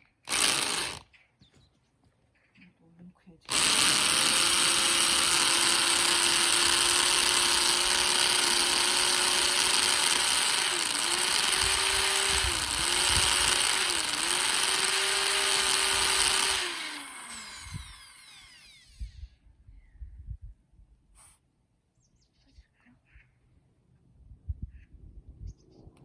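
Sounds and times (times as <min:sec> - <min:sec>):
electric drill boring into log: 0:00.2 - 0:01.0, 0:03.5 - 0:19.4.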